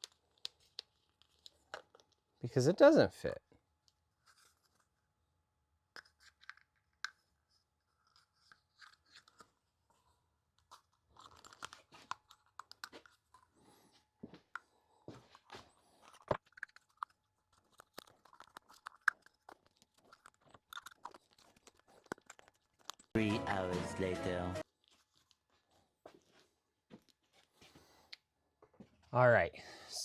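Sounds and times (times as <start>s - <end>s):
clicking and scraping of tool parts: 0.0s - 2.2s, 6.0s - 9.6s, 10.6s - 13.6s.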